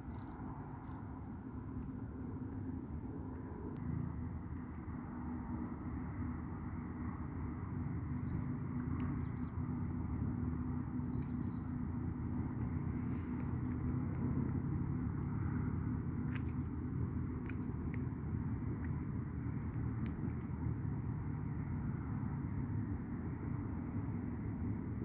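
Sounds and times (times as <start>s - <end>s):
faint bird chirps: 0.0s - 1.0s
faint hum: 0.0s - 25.0s
low rumbling background noise: 0.0s - 25.0s.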